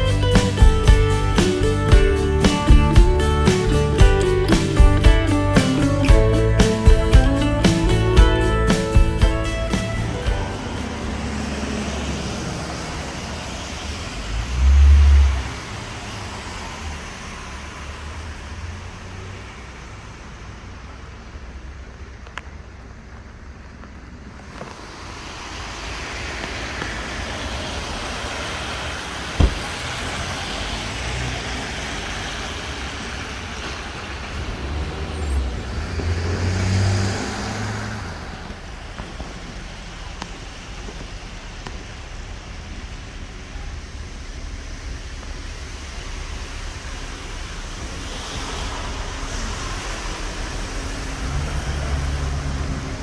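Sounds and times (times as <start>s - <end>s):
cars driving past: 0.0s - 53.0s
sharp knock: 29.4s - 29.8s.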